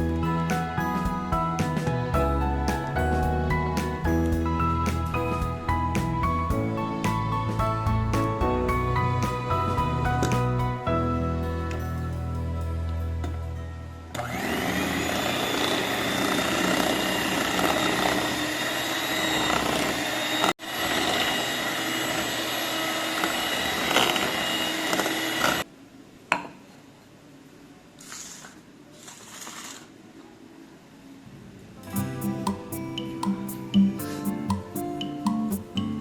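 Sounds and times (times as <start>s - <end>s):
electric mixer running: 14.2s - 25.6s.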